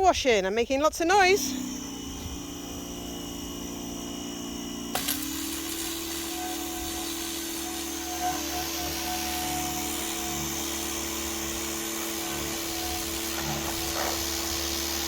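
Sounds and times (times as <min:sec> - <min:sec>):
pressure washer motor hum: 0:01.2 - 0:15.0
water spray hiss: 0:05.0 - 0:15.0.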